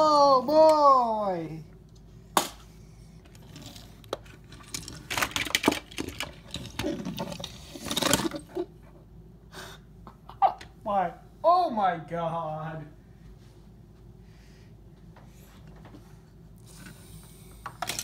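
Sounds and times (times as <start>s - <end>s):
plastic toy cars clattering: 3.3s - 8.6s, 17.6s - 18.0s.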